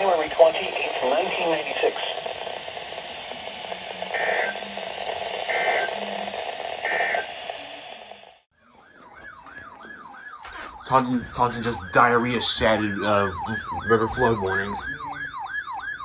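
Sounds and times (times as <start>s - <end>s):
warbling data bursts: 0.0s - 8.4s
radio receiver hiss: 0.0s - 8.5s
siren wail: 0.0s - 16.0s.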